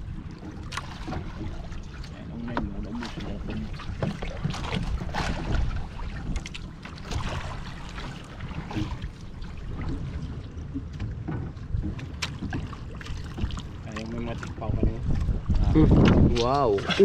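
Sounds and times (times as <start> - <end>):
water splashing against boat: 0.0 - 17.0
wind on microphone: 11.8 - 17.0.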